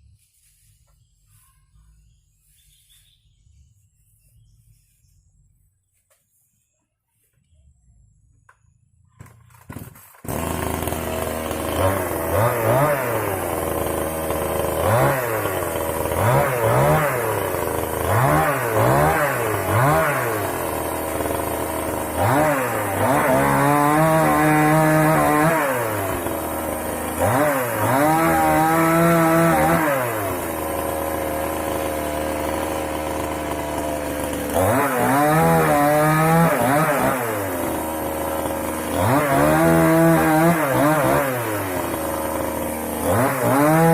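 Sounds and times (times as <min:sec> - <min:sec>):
chainsaw engine revving: 0:09.2 - 0:43.9.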